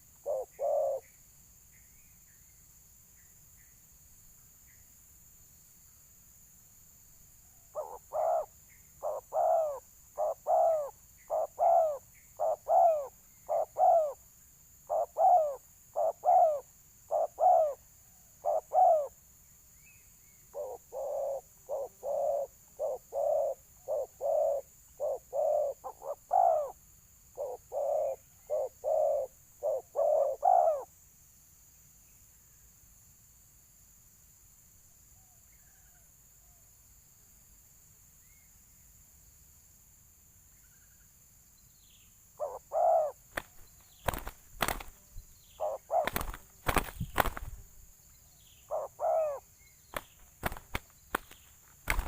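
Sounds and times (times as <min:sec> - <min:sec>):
dove cooing: 0:00.0 - 0:01.0, 0:07.7 - 0:14.2, 0:14.9 - 0:17.8, 0:18.4 - 0:19.1, 0:20.5 - 0:26.8, 0:27.4 - 0:30.9, 0:42.4 - 0:45.0, 0:45.6 - 0:47.7, 0:48.7 - 0:49.4, 0:50.0 - 0:52.0.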